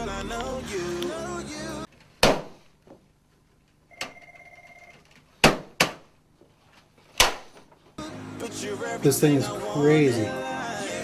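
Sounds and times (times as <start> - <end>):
sharp knocks: 2.0 - 3.0, 5.0 - 6.2, 7.2 - 7.8
short steady beep tone: 3.9 - 5.0.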